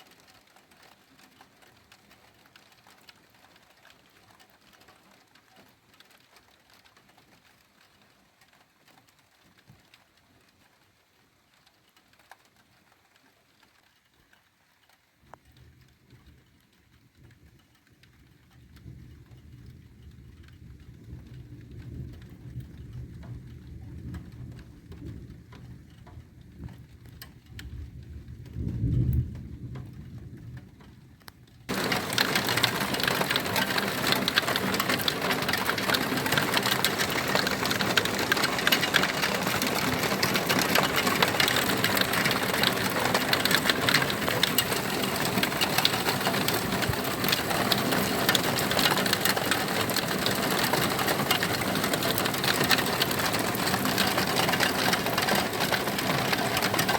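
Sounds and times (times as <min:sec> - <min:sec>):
heavy rain hiss: 0:31.7 - 0:56.9.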